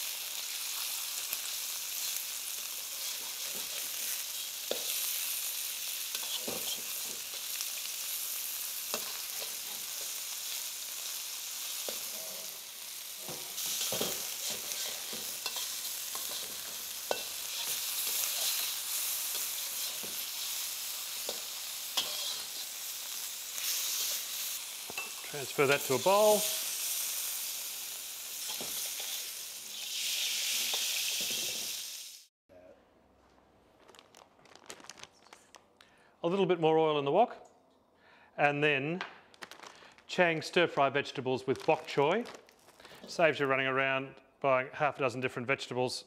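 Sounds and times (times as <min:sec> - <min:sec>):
chicken sizzling in hot oil: 0:00.0 - 0:32.3
utensil knocking and scraping wok: 0:02.8 - 0:05.0, 0:06.1 - 0:07.4, 0:08.9 - 0:10.2, 0:13.2 - 0:22.8, 0:24.9 - 0:26.4, 0:28.4 - 0:29.3.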